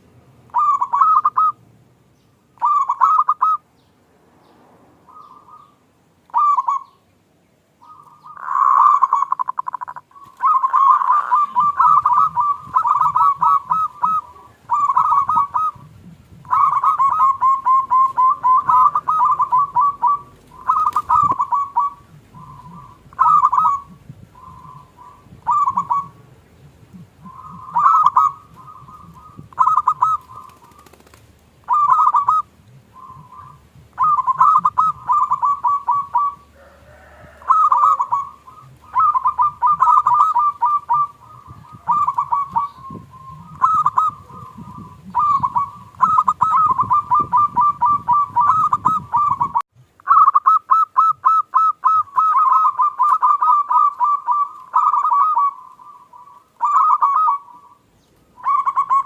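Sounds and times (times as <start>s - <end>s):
doves cooing: 0.0s - 1.6s, 2.6s - 3.6s, 5.1s - 7.0s, 7.8s - 59.0s.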